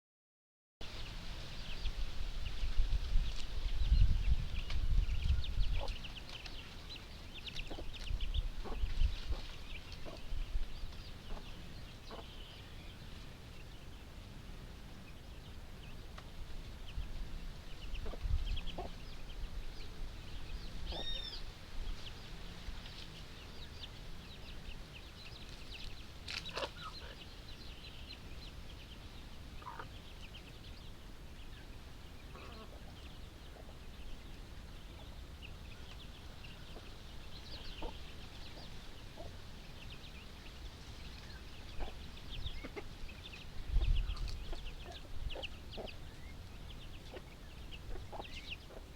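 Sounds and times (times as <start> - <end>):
chickens clucking: 4.6 - 12.6, 17.8 - 21.4, 25.0 - 28.1, 29.6 - 30.5, 32.1 - 48.9.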